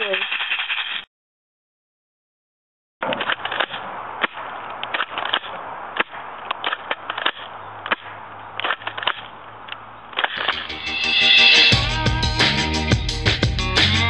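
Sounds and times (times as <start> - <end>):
airsoft gun clicks and clacks: 0.0 - 1.1, 3.0 - 10.6
music: 10.5 - 14.0.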